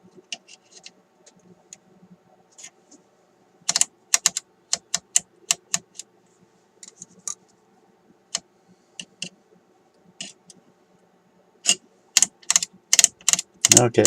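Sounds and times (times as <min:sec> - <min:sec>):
rotary switch clicking: 0:03.7 - 0:06.1, 0:11.6 - 0:13.9.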